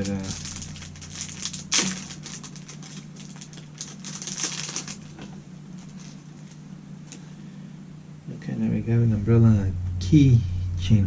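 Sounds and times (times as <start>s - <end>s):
packaging rustling and crinkling: 0.0s - 7.2s
faint steady hum: 0.0s - 11.0s.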